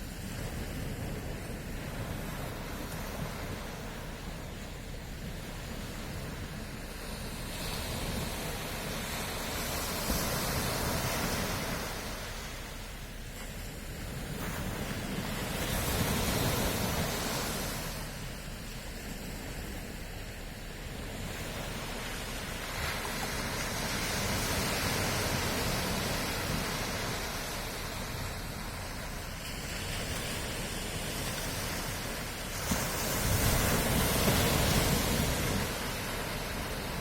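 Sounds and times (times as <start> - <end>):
sea waves breaking: 0.0 - 37.0.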